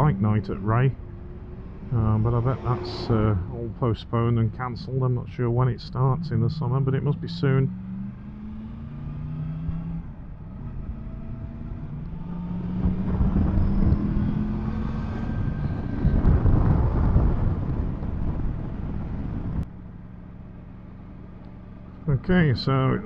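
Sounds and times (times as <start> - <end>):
wind rushing over microphone: 11.0 - 19.7.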